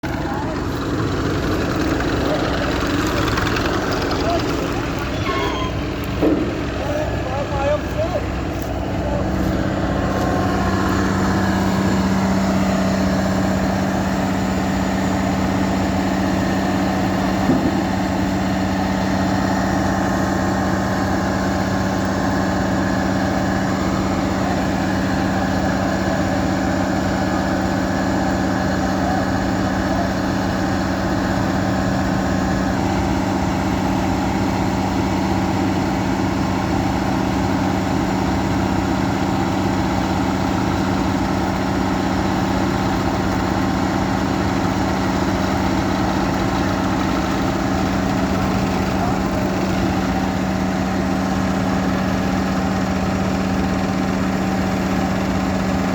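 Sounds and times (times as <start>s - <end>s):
diesel engine droning: 0.0s - 55.9s
brief knock: 6.1s - 6.7s.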